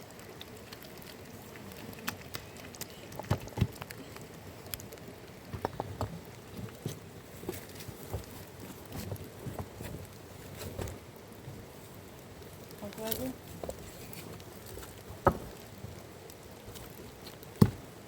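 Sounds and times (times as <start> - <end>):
steady rain: 0.0 - 18.0
dull thuds: 17.6 - 17.9.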